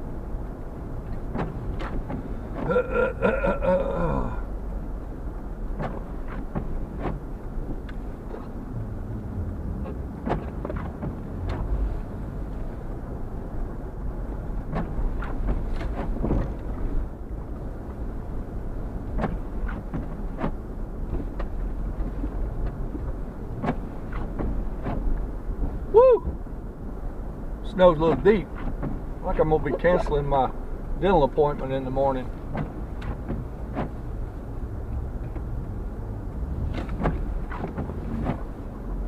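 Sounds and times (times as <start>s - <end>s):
car driving through snow: 0.0s - 39.0s
sharp knocks and thumps: 1.3s - 2.8s, 8.3s - 11.8s, 14.7s - 16.8s, 19.1s - 21.6s, 32.5s - 34.0s, 36.7s - 38.5s.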